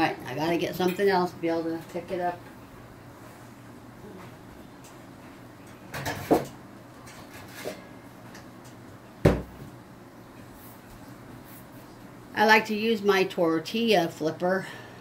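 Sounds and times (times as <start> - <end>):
cabinet door banging shut: 9.2 - 9.6
cabinet door knocks: 9.2 - 9.6.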